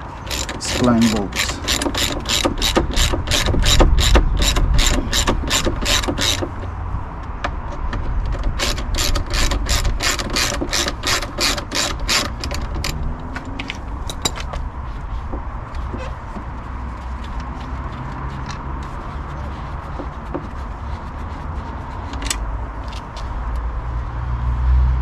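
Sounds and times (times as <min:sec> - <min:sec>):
hand ratchet clicking: 0:00.2 - 0:06.7, 0:07.8 - 0:14.5.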